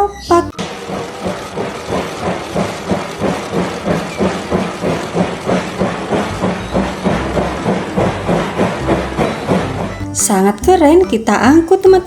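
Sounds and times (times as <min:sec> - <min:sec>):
locomotive chugging: 0:00.0 - 0:12.0
steam hiss: 0:00.6 - 0:10.0.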